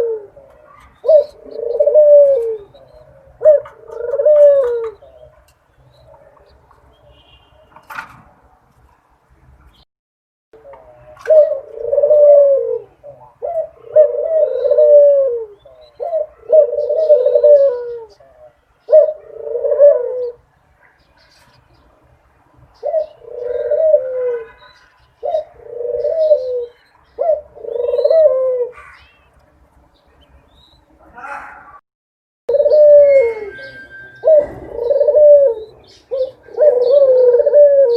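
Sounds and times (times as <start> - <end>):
dove cooing: 0.0 - 6.5, 10.6 - 20.4, 22.8 - 29.0, 32.5 - 37.9.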